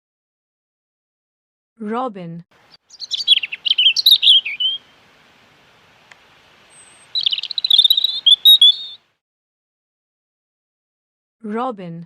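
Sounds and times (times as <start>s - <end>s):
robin singing: 2.6s - 9.0s.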